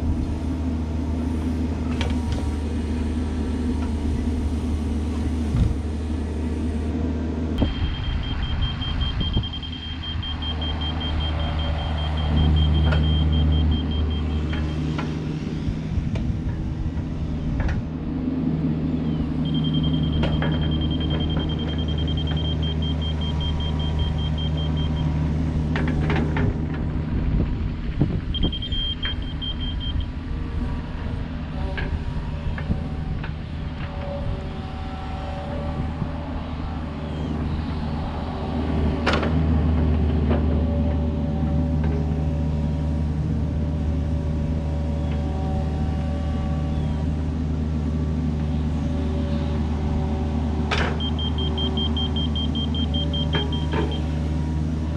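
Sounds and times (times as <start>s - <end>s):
diesel engine running: 0.0s - 54.9s
backup alarm beeping: 7.6s - 14.7s, 19.4s - 25.1s, 28.4s - 30.1s, 51.0s - 54.1s.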